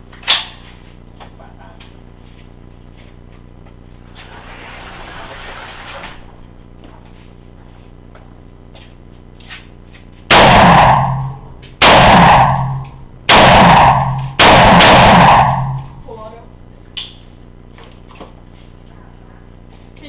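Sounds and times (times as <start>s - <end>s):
rifle shots echoing: 10.3s - 16.1s.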